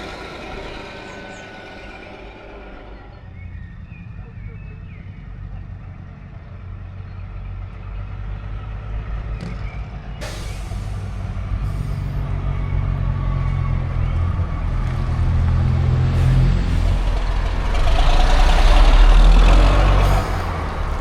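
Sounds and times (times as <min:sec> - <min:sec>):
bus diesel engine running: 0:00.0 - 0:21.0.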